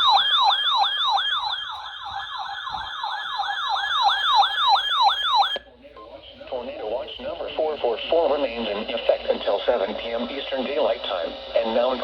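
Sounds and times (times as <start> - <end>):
electronic siren alert tone: 0.0 - 5.6.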